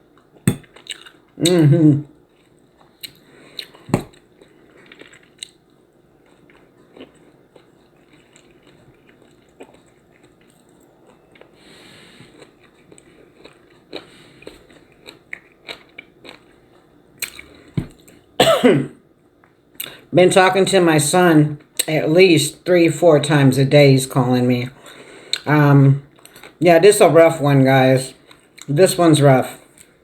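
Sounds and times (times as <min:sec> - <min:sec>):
person chewing food: 0:00.0 - 0:18.3, 0:26.1 - 0:26.6, 0:28.1 - 0:28.8.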